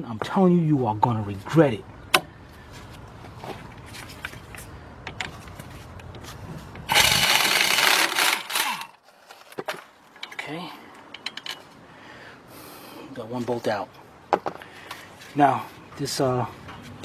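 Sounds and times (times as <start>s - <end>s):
impact gun spinning bolt: 6.9s - 8.8s.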